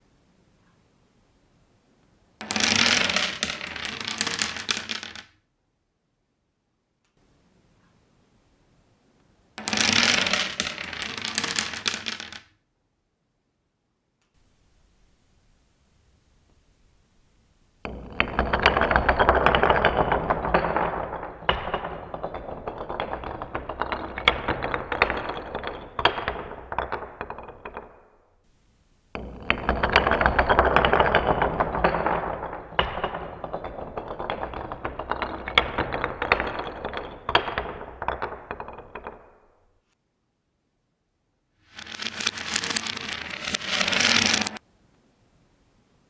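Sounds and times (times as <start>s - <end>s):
dominoes toppling and clattering: 2.4s - 5.3s, 9.6s - 12.5s, 41.7s - 44.6s.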